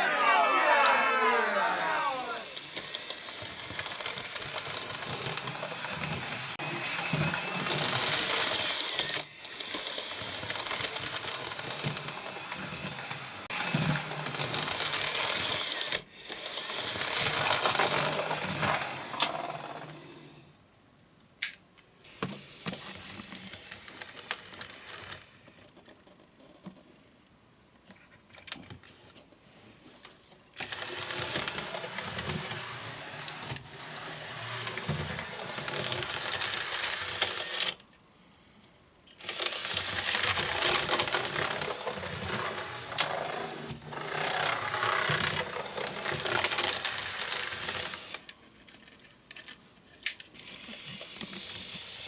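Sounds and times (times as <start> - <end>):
model train motor whirring: 1.4 - 20.4, 22.1 - 25.6, 30.6 - 37.8, 39.2 - 48.3, 50.0 - 52.0.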